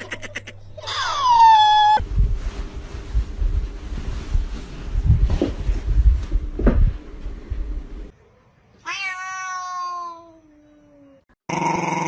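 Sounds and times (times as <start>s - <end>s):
wind rumbling on microphone: 2.0s - 8.1s
cat meowing: 8.8s - 10.4s.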